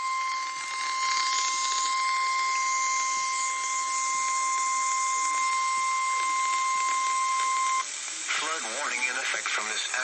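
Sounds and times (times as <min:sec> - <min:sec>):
steady alarm tone: 0:00.0 - 0:07.9
radio static hiss: 0:00.0 - 0:10.0.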